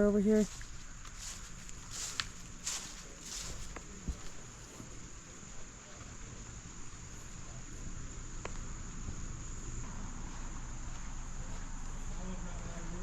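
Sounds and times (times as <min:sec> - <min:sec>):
insects shrilling: 0:00.0 - 0:08.9.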